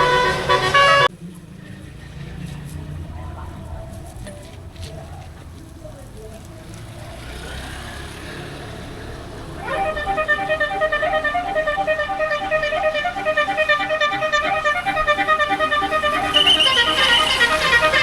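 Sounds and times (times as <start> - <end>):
bus horn playing fast melody: 0.0 - 1.1, 9.6 - 18.0.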